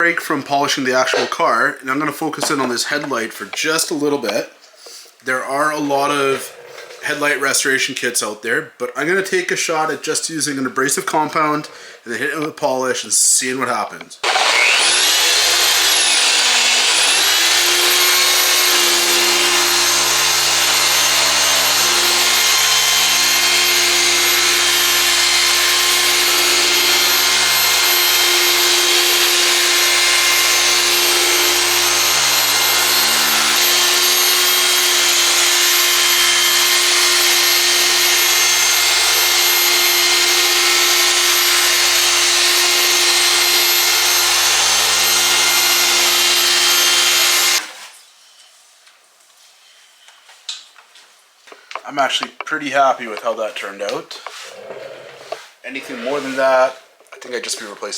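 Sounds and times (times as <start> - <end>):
electric polisher whining: 14.2 - 47.7.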